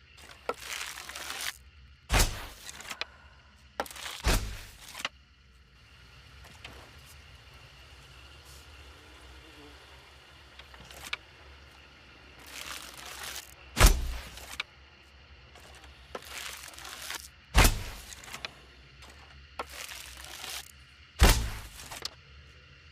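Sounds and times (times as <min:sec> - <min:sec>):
hissing rustle of bow: 0:00.2 - 0:03.0, 0:03.8 - 0:05.1, 0:06.3 - 0:14.6, 0:15.6 - 0:22.1
arrow crack and deep thud: 0:02.1 - 0:02.8, 0:04.1 - 0:05.0, 0:13.8 - 0:14.5, 0:17.5 - 0:18.1, 0:21.2 - 0:21.9.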